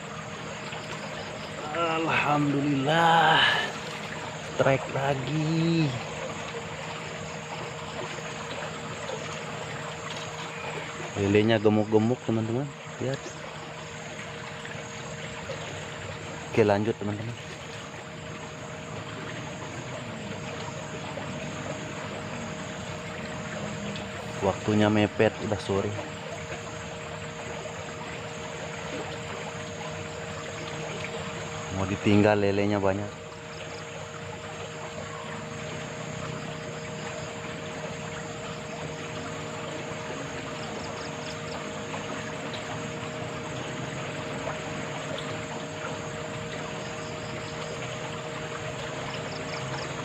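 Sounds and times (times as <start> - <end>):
droning tones: 0.0 - 50.0
faint steady hum: 0.0 - 50.0
flowing water rushing: 0.0 - 50.0.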